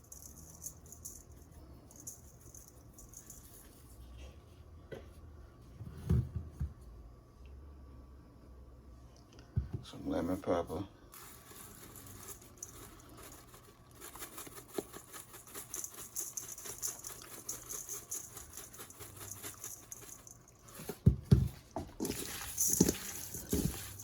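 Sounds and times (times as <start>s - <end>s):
seasoning shaker rattling: 0.0s - 3.8s, 11.1s - 24.0s.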